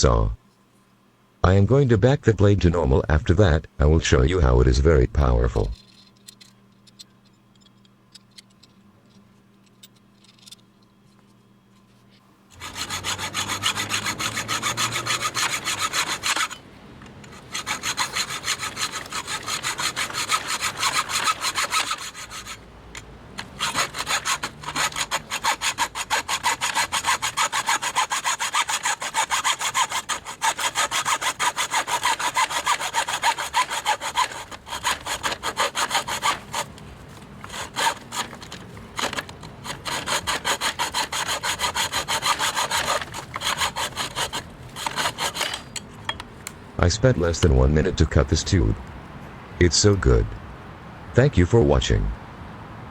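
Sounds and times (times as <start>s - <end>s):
hacksaw cutting through a tube: 12.6s - 16.6s, 17.2s - 22.6s, 23.4s - 36.7s, 37.4s - 45.8s.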